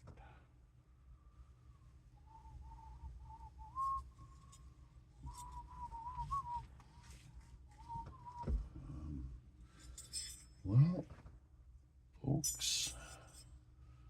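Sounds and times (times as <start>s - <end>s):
person whistling a tune: 2.3s - 4.5s, 5.2s - 7.0s, 7.7s - 8.6s.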